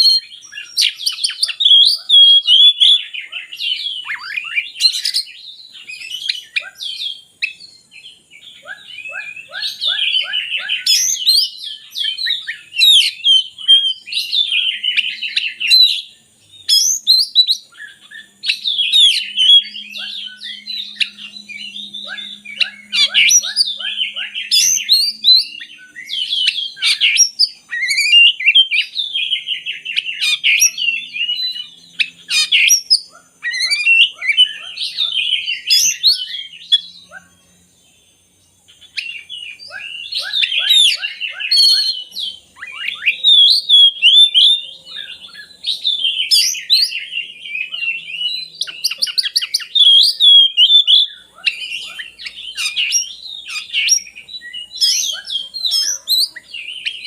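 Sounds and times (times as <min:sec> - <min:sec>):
bird singing whistles and trills: 0:00.0 - 0:57.0.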